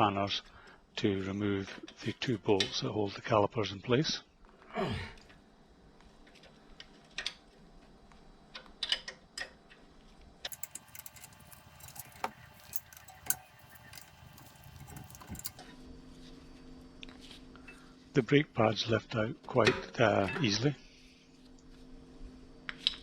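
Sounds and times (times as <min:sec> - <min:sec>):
metal spanners clinking: 0:10.5 - 0:15.6.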